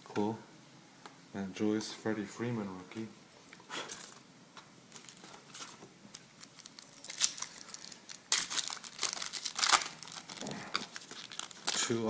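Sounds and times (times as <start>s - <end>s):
cards rustling and clicking: 4.9s - 12.0s
wrapper crinkling: 4.9s - 12.0s.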